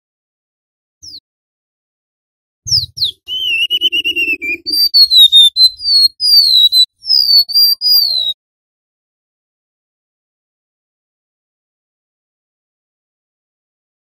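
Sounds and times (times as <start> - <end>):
bird singing whistled notes: 1.0 - 1.2, 2.7 - 8.4.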